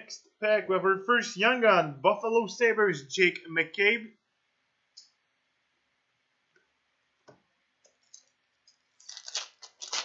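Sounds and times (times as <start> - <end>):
pack wrapper crinkling: 8.0 - 10.0.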